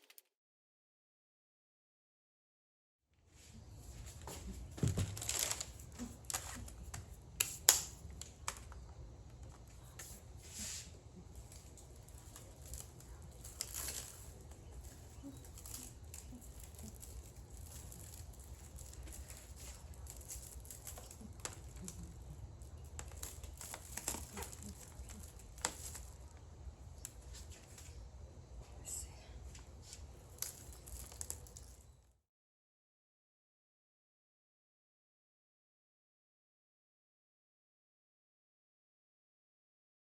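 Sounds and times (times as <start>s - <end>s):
steady low hum: 3.3s - 32.2s
crinkling and rustling handling noises: 3.4s - 28.8s, 29.4s - 32.0s.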